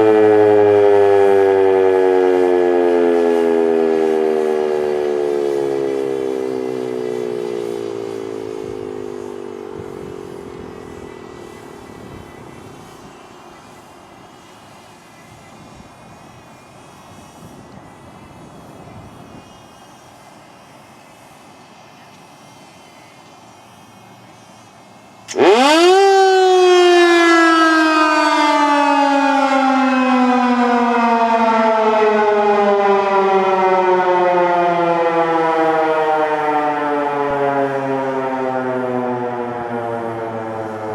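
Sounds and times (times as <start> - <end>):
warning siren wailing: 0.0 - 15.9, 25.3 - 40.9.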